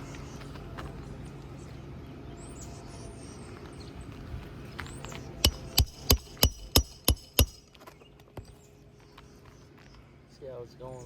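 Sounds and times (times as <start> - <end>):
hammer striking nail: 5.4 - 7.6.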